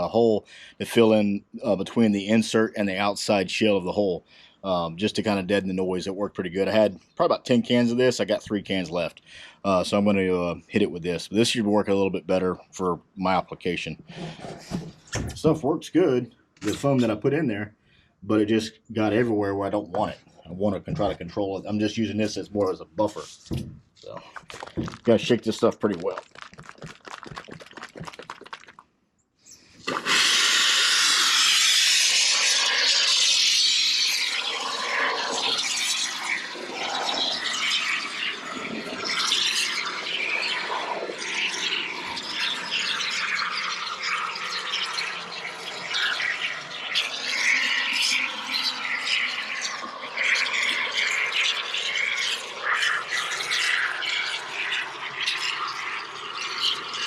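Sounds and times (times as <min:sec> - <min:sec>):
aerosol can spraying foam: 0:29.8 - 0:49.2.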